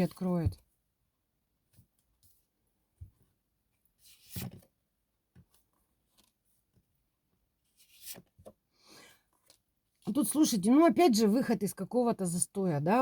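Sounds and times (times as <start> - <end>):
cards rustling and sliding on table: 4.0 - 4.7, 7.8 - 8.6.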